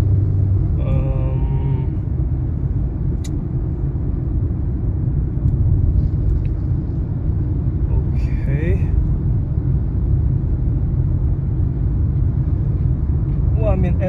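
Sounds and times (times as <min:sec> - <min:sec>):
car cabin road and engine rumble: 0:00.0 - 0:14.0
sharp click: 0:03.2 - 0:03.4.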